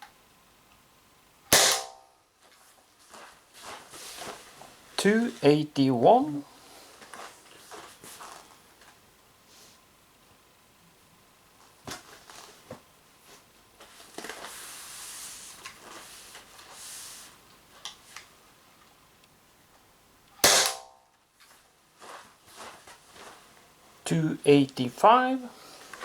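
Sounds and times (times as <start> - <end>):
air pistol shot: 1.5 - 2.1, 20.4 - 21.0
soft rustle of handling: 2.4 - 5.6, 6.4 - 9.9, 11.6 - 18.4, 21.3 - 24.0, 25.4 - 26.0.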